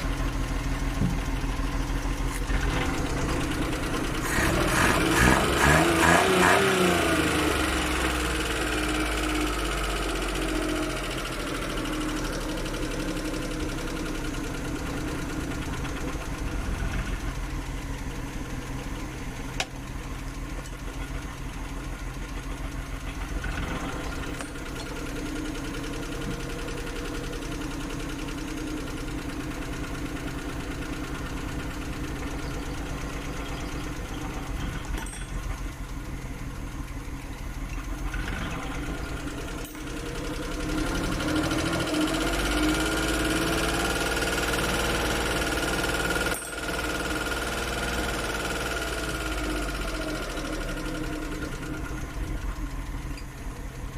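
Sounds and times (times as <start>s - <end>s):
engine idling: 0.0s - 53.9s.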